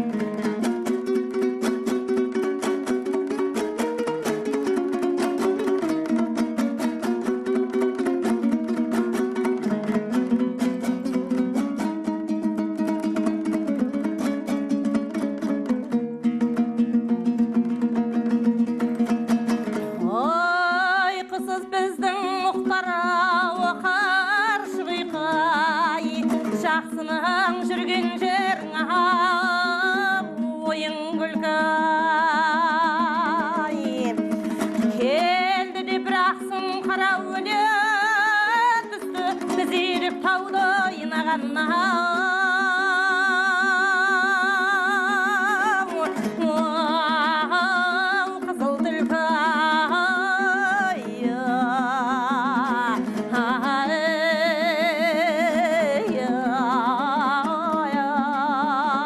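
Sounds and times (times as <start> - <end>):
plucked string accompaniment: 0.0 - 59.0
person singing with vibrato: 19.8 - 59.0.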